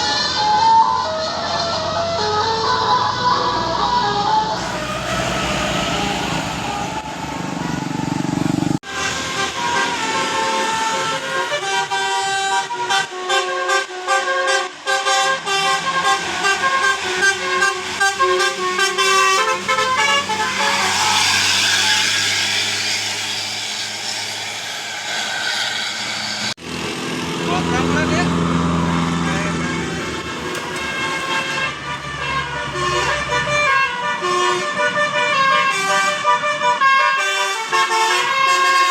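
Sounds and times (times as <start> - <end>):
road noise: 0.0 - 38.9
bus air horn melody: 0.6 - 7.0, 8.8 - 22.4, 29.5 - 38.9.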